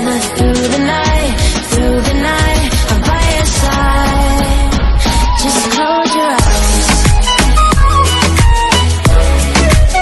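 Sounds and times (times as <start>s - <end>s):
person singing: 0.0s - 7.6s
electronic pop song: 0.0s - 10.0s.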